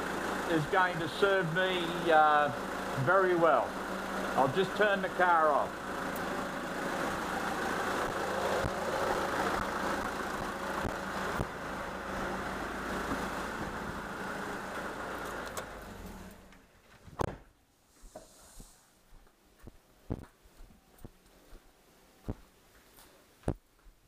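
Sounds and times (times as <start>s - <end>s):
diesel engine idling: 0.0s - 16.7s.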